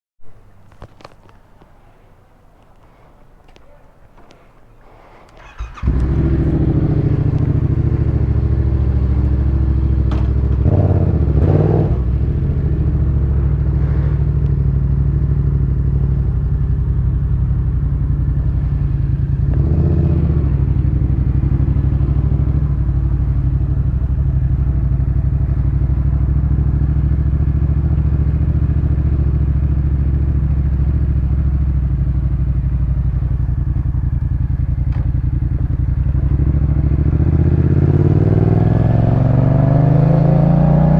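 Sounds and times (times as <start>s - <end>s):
motorcycle engine idling: 5.3s - 11.4s, 12.0s - 38.6s.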